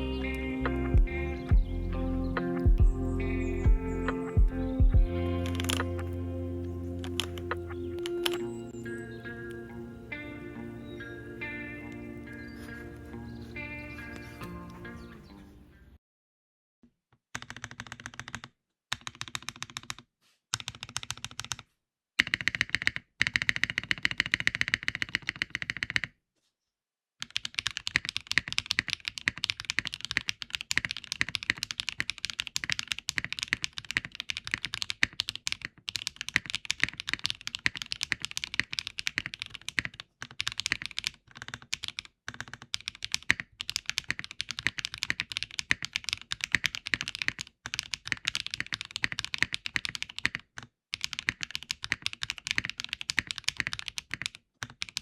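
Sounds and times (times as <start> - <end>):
fast mechanical keyboard typing: 17.4 - 21.6, 22.2 - 26.1, 27.2 - 55.0.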